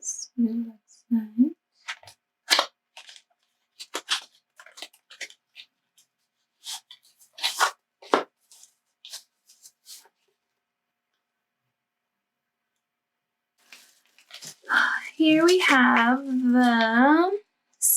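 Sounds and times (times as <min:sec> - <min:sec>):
packaging crinkling and rustling: 0:01.9 - 0:10.3, 0:13.6 - 0:17.1.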